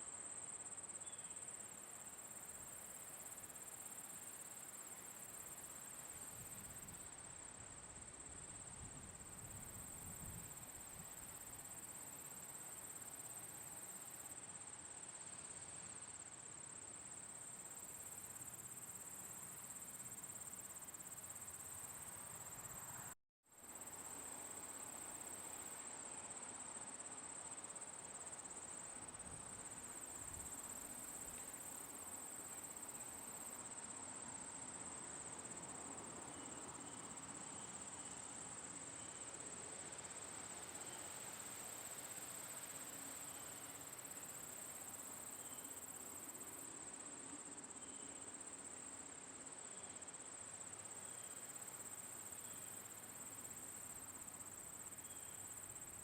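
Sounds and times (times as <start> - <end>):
faint background hiss: 0.0 - 56.0
crickets trilling: 0.3 - 14.4, 16.6 - 26.2, 26.8 - 56.0.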